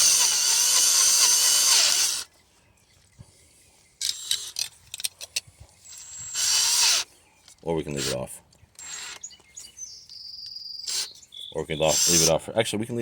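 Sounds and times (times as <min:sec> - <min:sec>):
power drill boring: 0:00.0 - 0:02.3, 0:05.8 - 0:07.0, 0:11.9 - 0:12.3.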